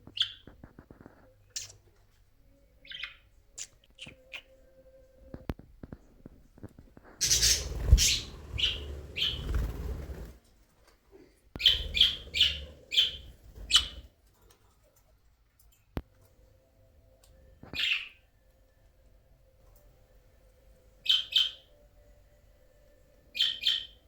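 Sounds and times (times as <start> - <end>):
low rustling: 7.0 - 10.4
budgerigar chirping: 7.2 - 9.7, 11.6 - 14.0, 21.0 - 21.7, 23.4 - 24.0.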